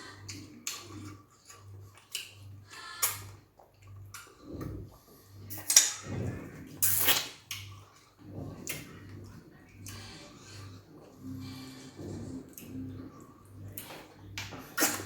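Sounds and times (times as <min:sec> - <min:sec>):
faint pulsing low hum: 0:00.0 - 0:15.0
wet mouth noises and slurps: 0:06.6 - 0:15.0.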